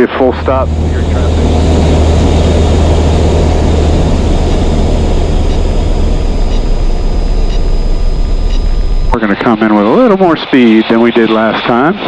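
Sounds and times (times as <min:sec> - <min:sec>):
airplane engine and propeller drone: 0:00.0 - 0:10.2.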